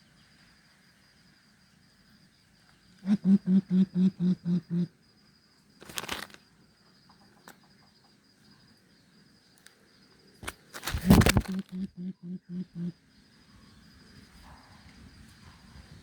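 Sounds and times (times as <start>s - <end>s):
coucal hooting: 3.0s - 4.9s, 11.3s - 13.0s
rustling: 5.8s - 6.4s, 10.4s - 11.8s.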